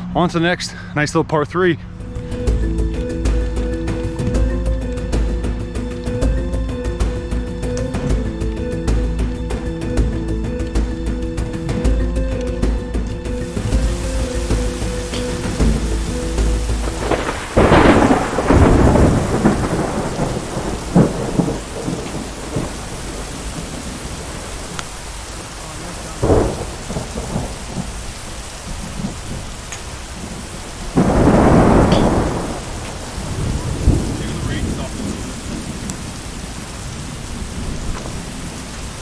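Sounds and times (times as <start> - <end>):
rain falling: 1.9 - 39.0
thunder rolling: 12.8 - 39.0.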